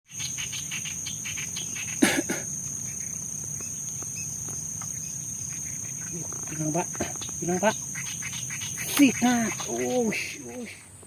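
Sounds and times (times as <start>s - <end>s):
loud pitched calls: 0.1s - 10.9s
insects droning with high trill: 0.1s - 11.0s.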